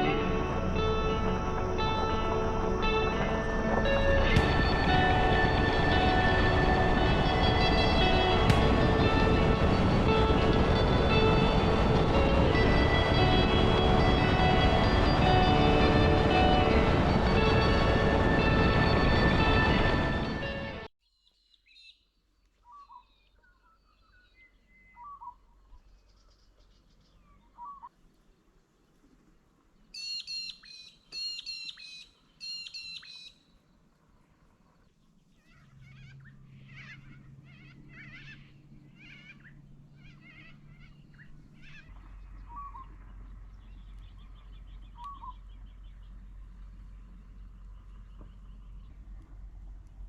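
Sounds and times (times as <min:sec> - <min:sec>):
birds calling: 0:00.0 - 0:20.8, 0:35.4 - 0:49.0
low steady hum: 0:00.0 - 0:20.9, 0:35.6 - 0:50.0.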